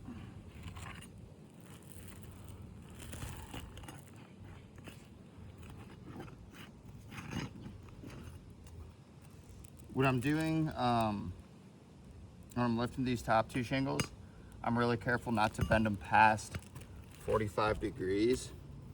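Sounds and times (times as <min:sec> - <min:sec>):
roofing shingles crackling and scraping: 0:00.0 - 0:11.3, 0:12.5 - 0:18.9.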